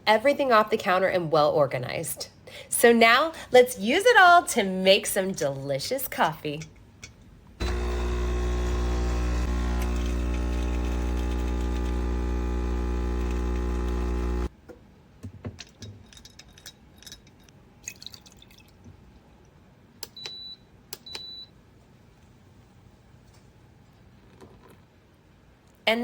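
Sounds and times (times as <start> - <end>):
espresso machine pump buzzing: 7.6 - 14.5.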